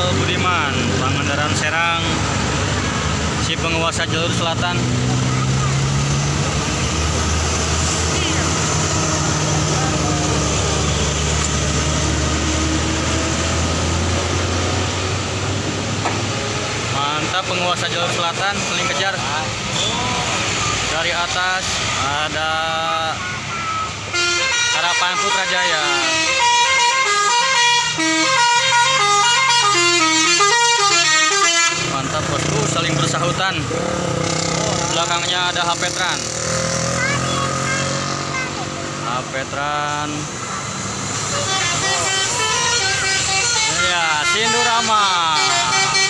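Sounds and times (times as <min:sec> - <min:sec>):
diesel bus engine: 0:00.0 - 0:46.0
tyre and road noise: 0:00.0 - 0:46.0
multi-tone bus horn melody: 0:07.9 - 0:14.4, 0:23.8 - 0:32.1, 0:41.2 - 0:46.0.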